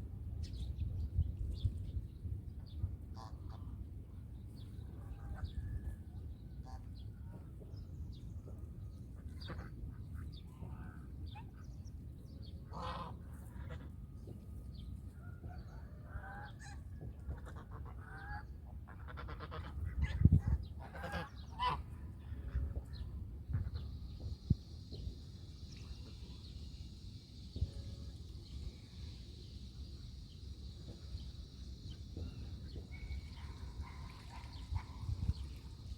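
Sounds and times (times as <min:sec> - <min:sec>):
geese honking: 0:20.8 - 0:21.8.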